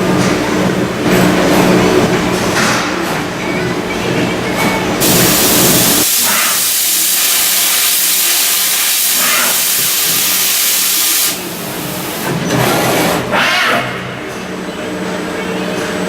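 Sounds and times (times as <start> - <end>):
machine air hiss: 5.0 - 12.3.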